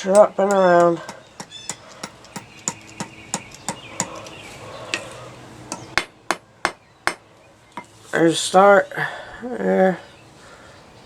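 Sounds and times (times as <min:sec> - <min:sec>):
hammer tapping on anvil: 0:00.0 - 0:05.1, 0:05.7 - 0:07.2.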